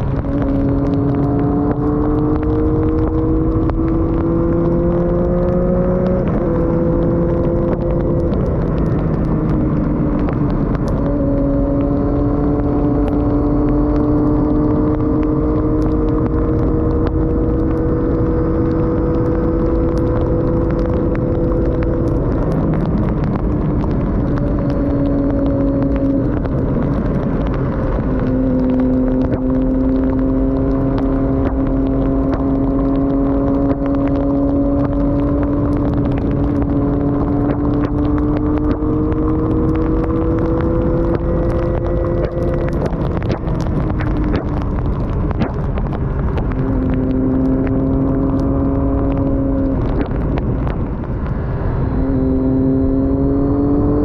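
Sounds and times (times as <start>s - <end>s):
motorcycle engine revving: 0.0s - 54.0s
wind rushing: 0.0s - 54.0s.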